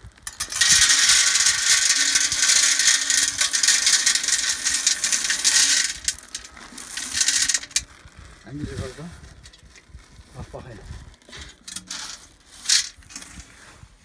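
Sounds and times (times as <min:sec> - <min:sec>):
corn planter metal rattling: 0:00.0 - 0:13.6.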